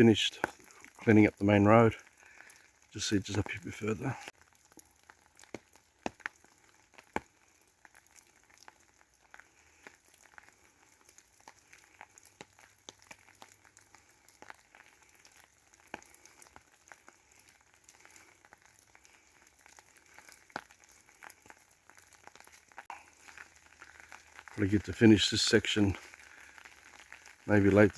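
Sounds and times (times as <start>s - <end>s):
rain pattering on umbrella: 0.0s - 27.9s.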